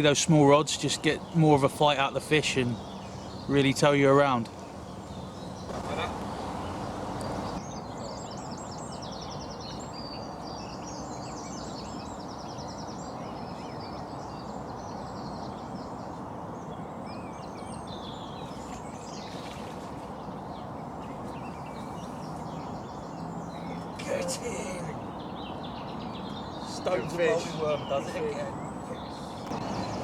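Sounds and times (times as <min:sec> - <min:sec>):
outdoor background hiss: 0:00.0 - 0:30.0
small birds trilling and chirping: 0:00.0 - 0:30.0.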